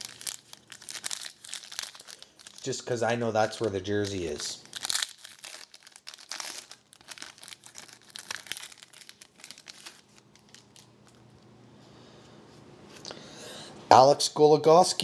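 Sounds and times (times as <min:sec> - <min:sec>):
wrapper crinkling and tearing: 0:00.0 - 0:11.3.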